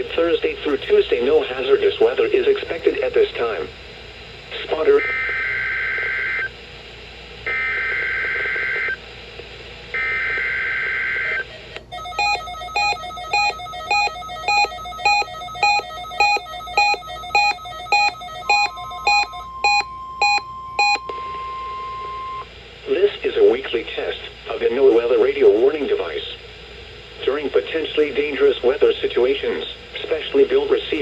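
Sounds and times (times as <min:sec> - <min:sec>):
rapid electronic beeping: 0:12.0 - 0:21.0.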